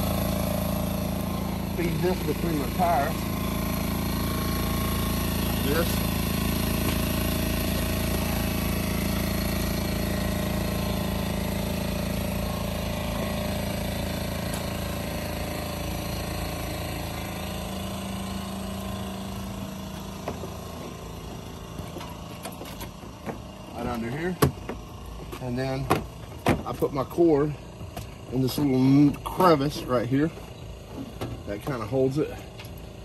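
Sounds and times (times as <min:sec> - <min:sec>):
generator engine running: 0:00.0 - 0:33.0.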